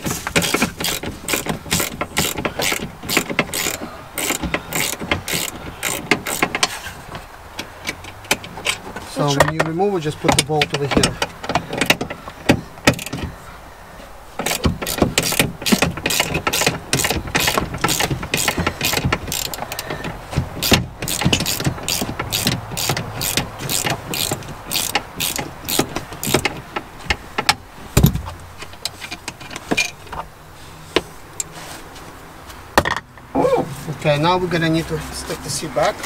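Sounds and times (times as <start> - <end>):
socket ratchet clicking: 0.3 - 6.7, 11.1 - 13.3, 14.4 - 27.6.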